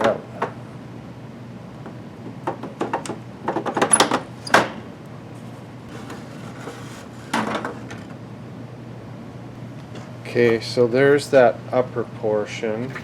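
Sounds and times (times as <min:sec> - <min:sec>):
metal unit scraping: 0:05.9 - 0:08.1.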